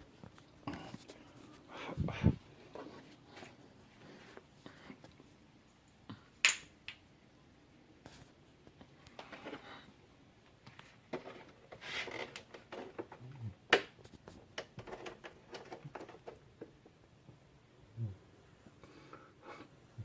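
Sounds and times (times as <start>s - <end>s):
soft breathy puffs: 0.6s - 5.3s, 17.9s - 20.0s.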